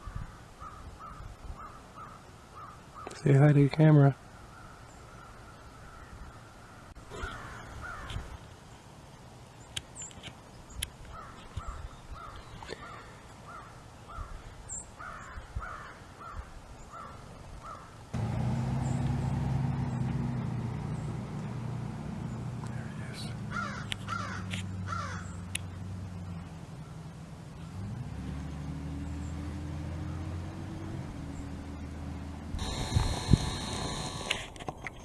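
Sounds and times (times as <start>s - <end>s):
crows cawing: 0.0s - 3.1s, 4.6s - 8.2s, 11.1s - 14.4s, 15.0s - 18.0s, 23.5s - 25.4s
steady low hum: 18.2s - 23.5s, 31.0s - 34.5s.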